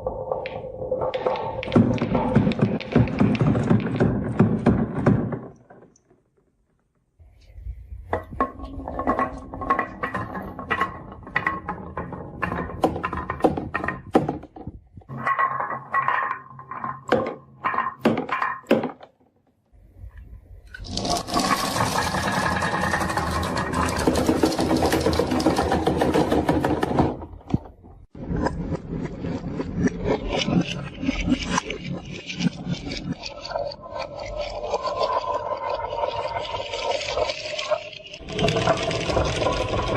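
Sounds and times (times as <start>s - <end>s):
marbles clattering down wooden run: 20.8s - 27.2s, 33.1s - 39.9s.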